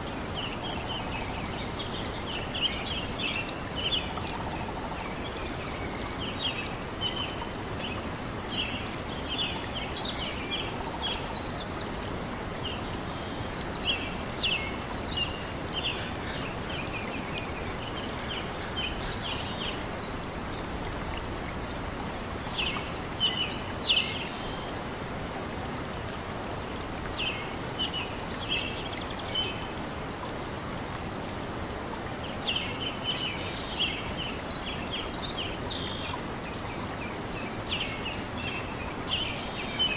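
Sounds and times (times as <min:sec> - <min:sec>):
flowing water rushing: 0:00.0 - 0:39.9.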